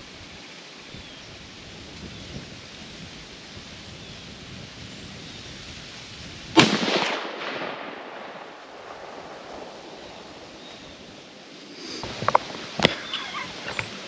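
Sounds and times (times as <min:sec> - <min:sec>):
wind noise: 0:00.0 - 0:14.0
rifle shot with echo: 0:06.6 - 0:11.2.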